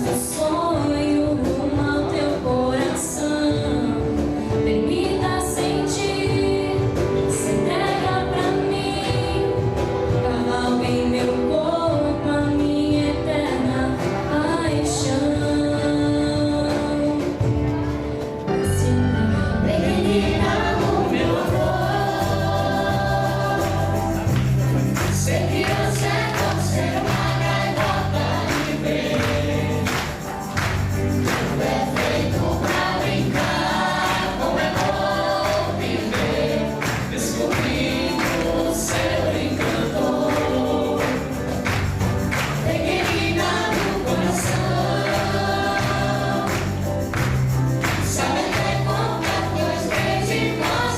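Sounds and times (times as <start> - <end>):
instrumental accompaniment: 0.0 - 50.9
choir singing: 19.5 - 50.9
bass line and beat: 19.9 - 50.9.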